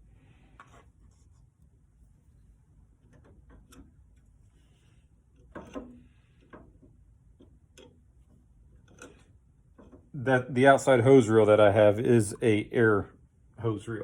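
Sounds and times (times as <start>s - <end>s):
metal fittings and tools clattering: 8.8s - 10.1s.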